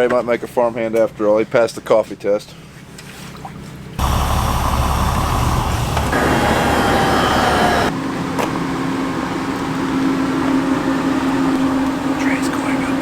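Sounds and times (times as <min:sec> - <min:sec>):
engine rumbling: 0:04.0 - 0:08.0.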